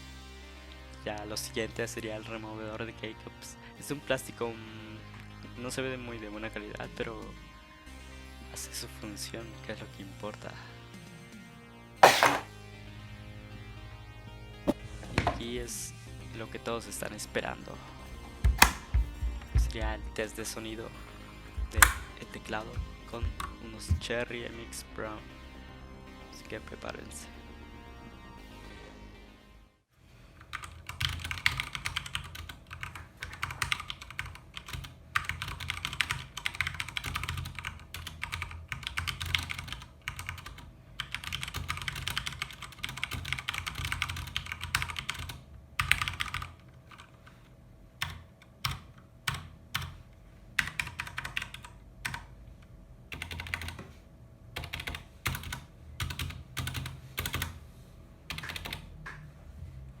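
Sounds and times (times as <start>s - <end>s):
mechanical keyboard typing: 12.0s - 12.4s, 18.6s - 19.0s, 21.6s - 22.1s, 30.4s - 47.1s, 50.6s - 52.2s, 53.1s - 53.8s, 54.6s - 57.5s, 58.3s - 58.9s.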